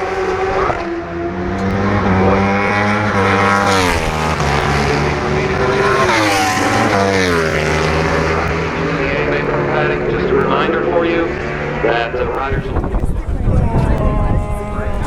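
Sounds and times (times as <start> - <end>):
racing motorcycle engines: 0.0 - 15.0.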